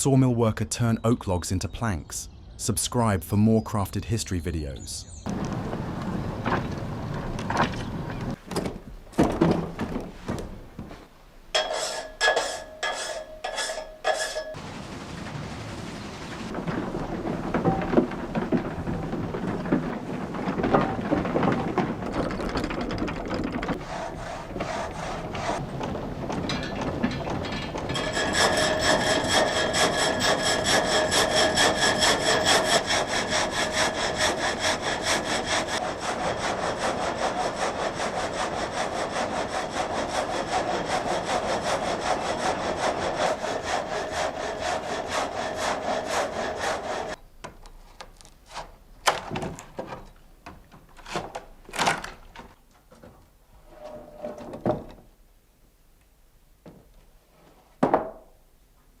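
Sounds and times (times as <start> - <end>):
saw blade rasping through log: 11.6 - 14.6, 23.7 - 25.6, 27.9 - 47.2
knocks: 16.5 - 23.8.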